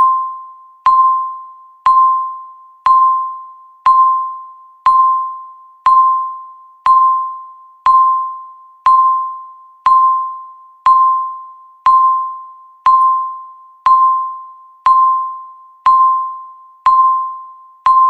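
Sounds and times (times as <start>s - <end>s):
electronic timer beeps: 0.0s - 18.0s.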